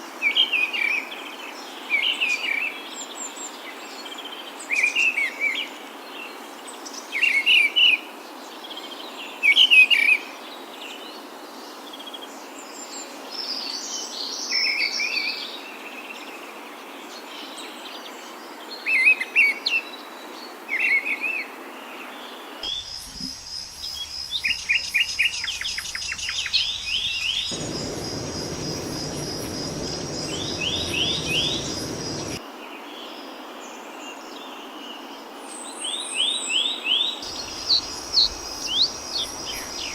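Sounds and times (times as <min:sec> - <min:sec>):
rushing noise: 0:22.6 - 0:32.4, 0:37.3 - 0:39.9
songbirds chirping and singing: 0:22.6 - 0:32.4, 0:37.2 - 0:39.9.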